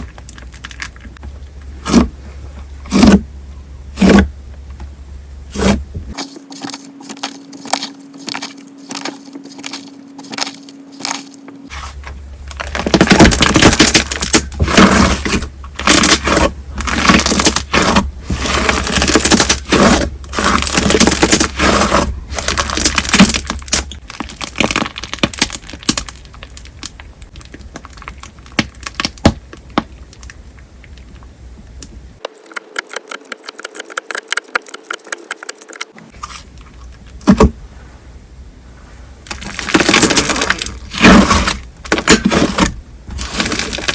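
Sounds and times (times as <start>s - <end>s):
slime crackling and popping: 12.4s - 31.1s, 39.3s - 42.4s, 43.2s - 43.9s.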